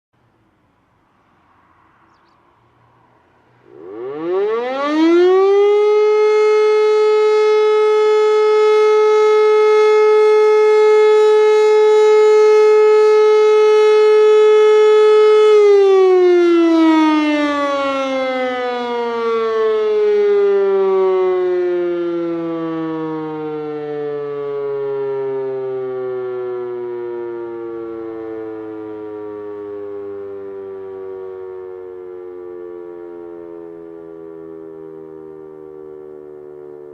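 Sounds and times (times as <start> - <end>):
electric motor siren wailing: 3.1 - 36.9.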